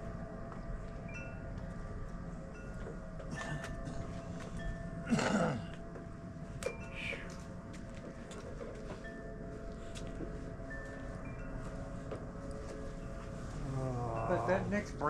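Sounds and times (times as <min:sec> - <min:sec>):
wind chimes ringing: 0:01.0 - 0:05.1, 0:06.6 - 0:07.4, 0:08.8 - 0:15.0.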